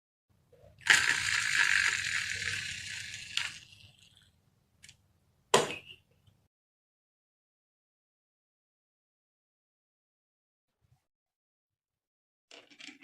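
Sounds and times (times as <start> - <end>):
marbles rolling on track: 0.8 - 4.0.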